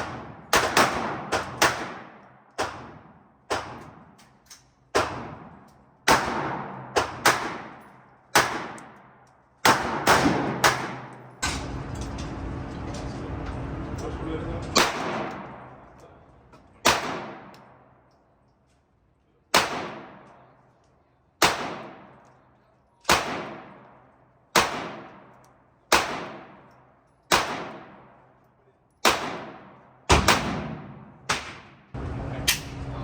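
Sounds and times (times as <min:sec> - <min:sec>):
gunshots with echo: 0:00.0 - 0:04.1, 0:06.1 - 0:09.0, 0:09.6 - 0:12.1, 0:14.6 - 0:16.0, 0:16.8 - 0:17.8, 0:19.5 - 0:20.3, 0:24.6 - 0:25.3, 0:27.3 - 0:28.1, 0:29.0 - 0:32.9.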